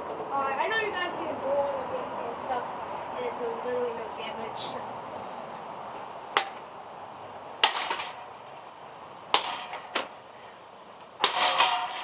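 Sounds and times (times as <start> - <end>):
ringing rattle: 11.2 - 12.0.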